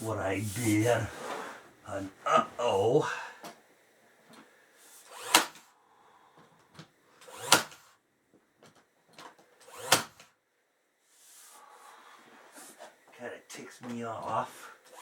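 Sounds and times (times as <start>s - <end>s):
hammer driving nails into wood: 5.1s - 5.6s, 6.8s - 7.9s, 9.6s - 10.3s.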